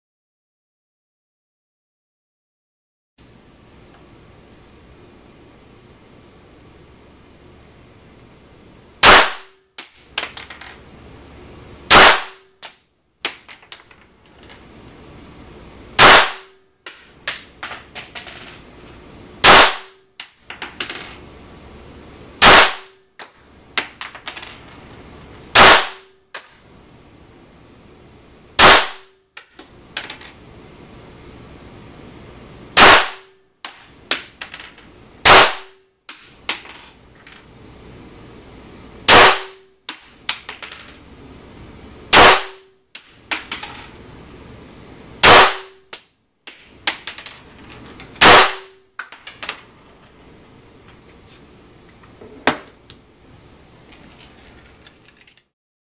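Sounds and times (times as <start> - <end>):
pistol shots: 9.0 - 9.5, 11.9 - 12.5, 16.0 - 16.6, 19.4 - 20.0, 22.4 - 23.0, 25.6 - 26.1, 28.6 - 29.1, 32.8 - 33.4, 35.2 - 35.8, 39.1 - 39.6, 42.1 - 42.7, 45.2 - 45.8, 48.2 - 48.8.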